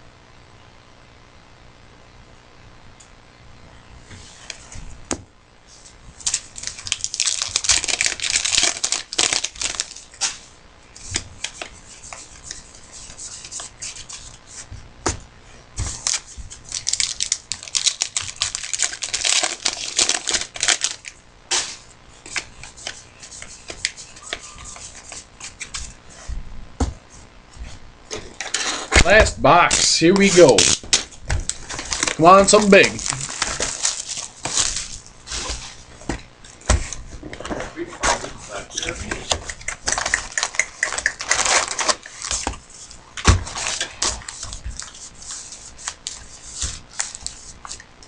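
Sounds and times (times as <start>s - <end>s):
wrapper crackles: 6.2s - 10.3s, 16.0s - 21.2s, 29.7s - 35.1s, 39.8s - 42.4s
card-pack wrappers tearing: 6.2s - 10.4s, 16.0s - 21.7s, 29.7s - 35.4s, 39.8s - 42.5s.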